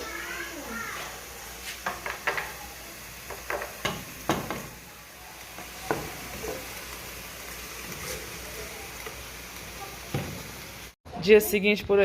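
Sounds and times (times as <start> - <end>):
food sizzling in a frying pan: 0.0 - 11.0
utensil knocking against pan: 1.8 - 2.5, 3.3 - 4.7.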